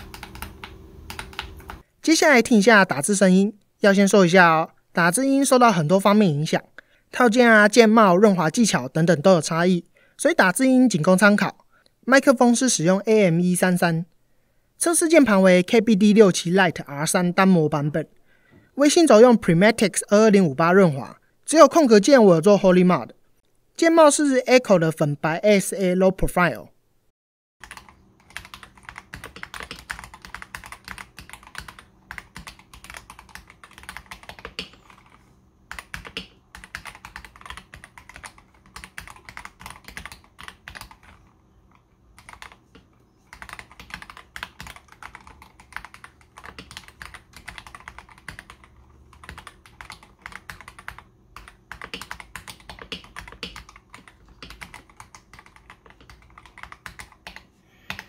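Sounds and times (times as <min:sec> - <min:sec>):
mechanical keyboard typing: 0:00.0 - 0:01.9, 0:27.6 - 0:58.0.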